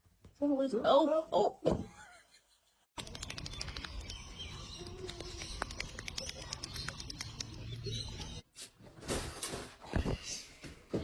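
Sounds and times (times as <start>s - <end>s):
sharp clicks: 3.0s - 7.8s.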